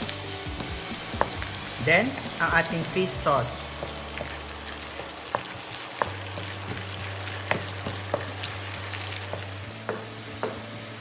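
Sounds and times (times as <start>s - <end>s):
food sizzling in oil: 0.0s - 11.0s.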